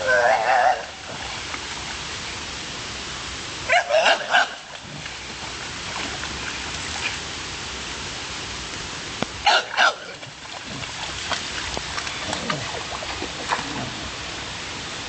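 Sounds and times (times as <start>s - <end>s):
steady hiss: 0.0s - 15.0s
puppy barking: 3.7s - 4.6s, 9.4s - 10.2s.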